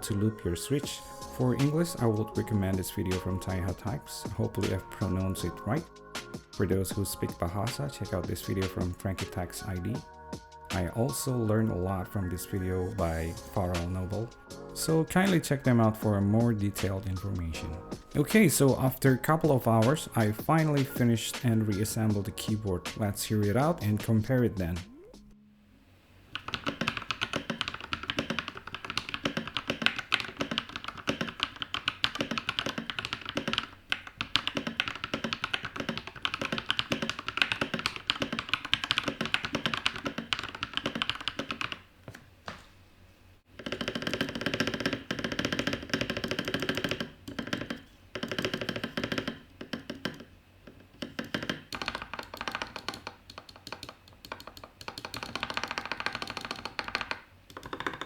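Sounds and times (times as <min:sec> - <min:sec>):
mechanical keyboard typing: 0:26.3 - 0:41.9, 0:43.6 - 0:58.0.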